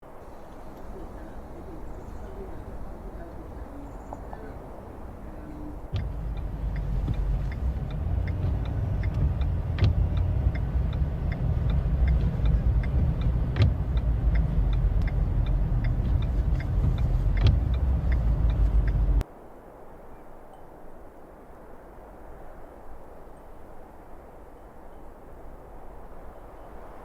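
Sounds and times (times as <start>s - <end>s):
car road and engine rumble: 0.0s - 19.2s
light regular ticking: 5.8s - 19.2s.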